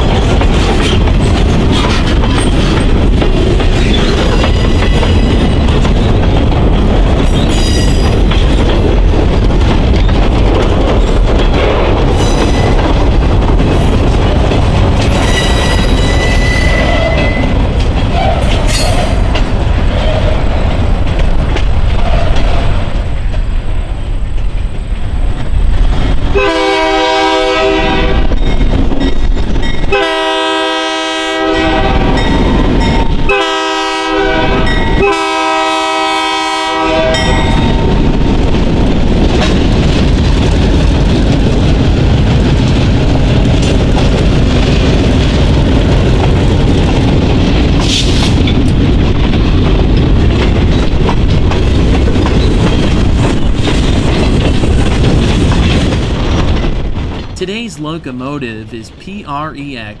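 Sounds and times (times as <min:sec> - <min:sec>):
train rumble: 0:00.0 - 0:58.0
locomotive horn: 0:26.4 - 0:28.3, 0:29.9 - 0:32.1, 0:33.3 - 0:37.3.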